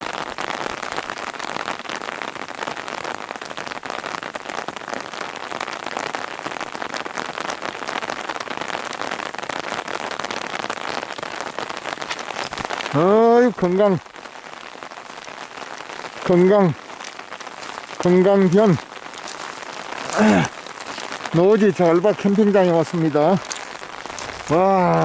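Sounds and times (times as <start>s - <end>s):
water pattering and hissing: 16.0s - 25.0s.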